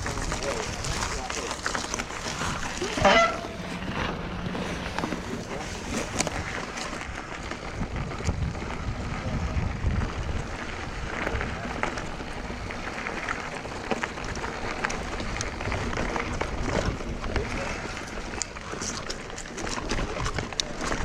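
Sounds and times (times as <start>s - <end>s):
bike clicks and rattles: 0.0s - 21.0s
bike tyres rolling on dirt: 0.0s - 21.0s
wind rumbling on microphone: 0.0s - 21.0s.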